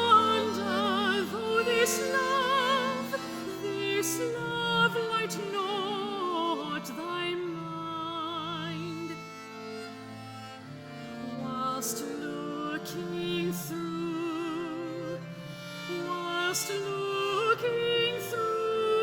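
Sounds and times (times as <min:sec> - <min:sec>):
solo singer with vibrato: 0:00.0 - 0:09.2, 0:16.1 - 0:19.0
viols playing sustained chords: 0:00.0 - 0:12.2.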